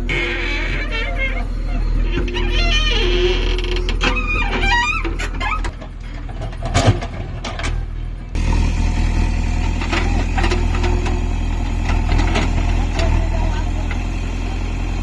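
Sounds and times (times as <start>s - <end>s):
diesel engine running: 8.0s - 15.0s
machinery clanks: 8.4s - 15.0s.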